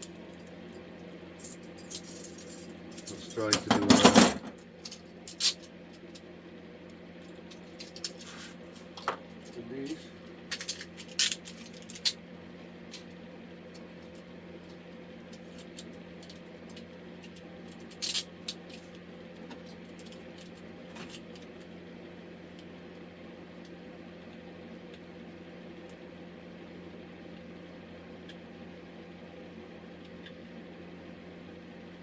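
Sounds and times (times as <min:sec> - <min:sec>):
metal handcuffs and chain clinking: 0:01.4 - 0:05.7, 0:07.5 - 0:08.3, 0:09.9 - 0:12.2, 0:15.4 - 0:18.8.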